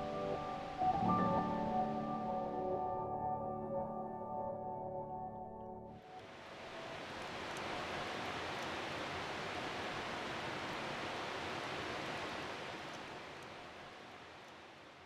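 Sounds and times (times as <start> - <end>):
steady rain falling: 0.0 - 3.7, 6.0 - 15.0
faint drip ticks: 6.8 - 10.9, 12.1 - 13.8.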